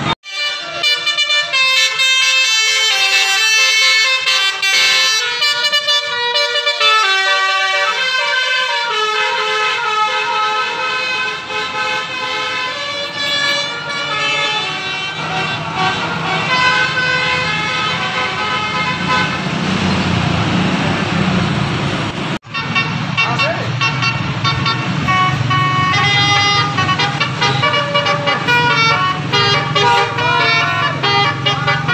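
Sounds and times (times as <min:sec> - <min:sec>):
musical vehicle horns: 0:00.0 - 0:19.7, 0:22.4 - 0:31.9
engine and road rumble: 0:00.0 - 0:31.9.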